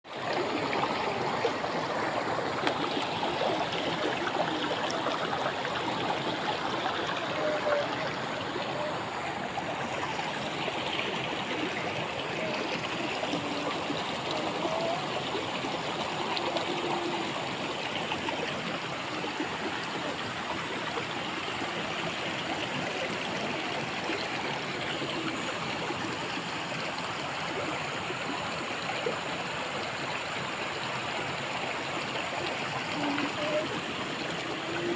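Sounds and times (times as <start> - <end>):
waterfall rushing into pool: 0.1 - 34.9.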